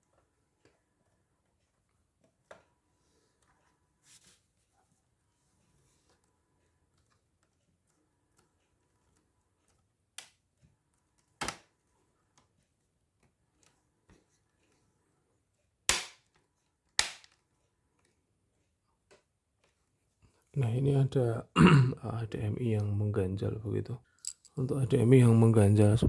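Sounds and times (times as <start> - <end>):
plastic laptop case snapping into place: 11.4 - 11.7.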